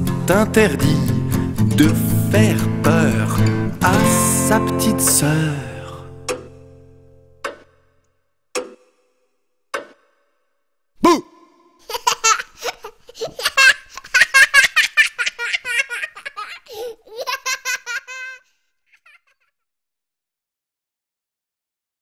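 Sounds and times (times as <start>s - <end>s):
child giggling: 11.8s - 18.4s, 19.0s - 19.4s.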